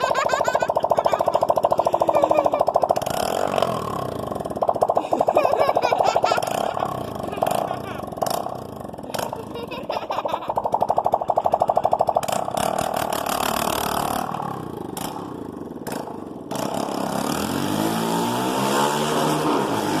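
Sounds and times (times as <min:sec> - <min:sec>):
motorcycle engine burbling and revving: 0:00.0 - 0:20.0.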